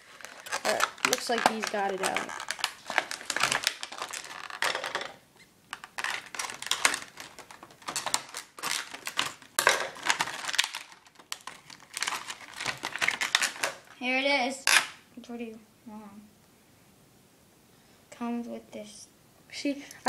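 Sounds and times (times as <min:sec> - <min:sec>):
plastic packaging crinkling: 0:00.0 - 0:14.0.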